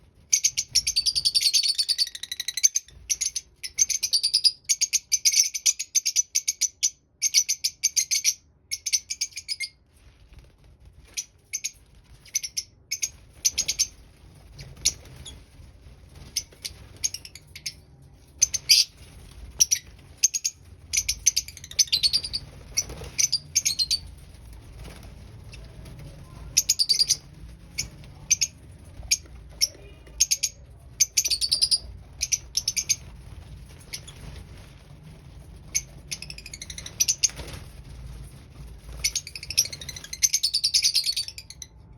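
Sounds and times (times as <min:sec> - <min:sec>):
faint low hum: 0:08.7 - 0:41.9
lovebirds chirping: 0:16.2 - 0:34.4, 0:35.7 - 0:37.6.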